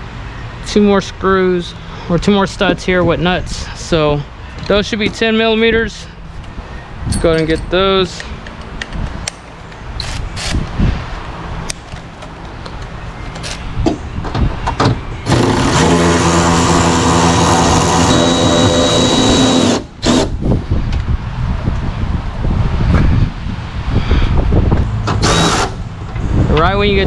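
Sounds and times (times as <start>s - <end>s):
clicks and knocks of tool handling: 7.1s - 10.6s, 11.7s - 13.7s
cordless power tool running: 15.3s - 20.3s, 25.2s - 25.8s.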